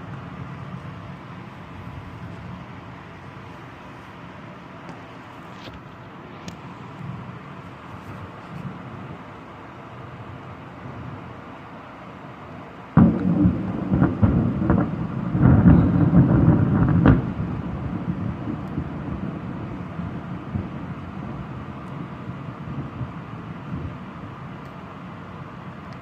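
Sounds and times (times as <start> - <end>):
steady rain: 0.0 - 26.0
thunderclap crackling and rumbling: 12.9 - 26.0.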